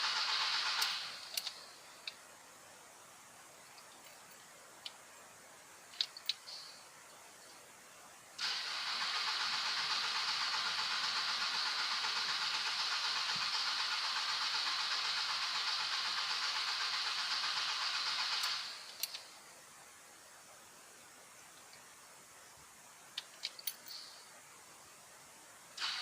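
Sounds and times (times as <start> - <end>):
starter motor cranking diesel engine: 0.0 - 1.6, 8.4 - 19.1, 25.8 - 26.0
sharp clicks: 0.0 - 2.2, 5.9 - 6.7, 8.4 - 19.3, 23.1 - 24.2.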